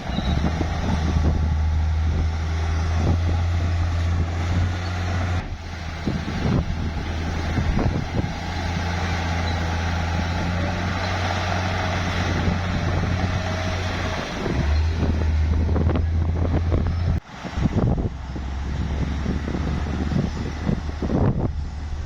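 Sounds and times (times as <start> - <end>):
bulldozer diesel engine running: 0.0 - 22.0.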